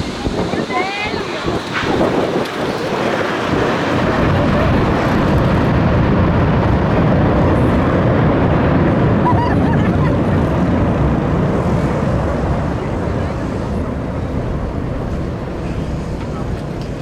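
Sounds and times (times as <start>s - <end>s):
jet engines rushing: 0.0s - 17.0s.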